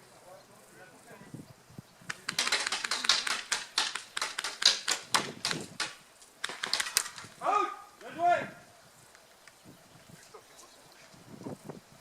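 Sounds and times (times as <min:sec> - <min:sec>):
airsoft gun shots: 0:02.1 - 0:07.3.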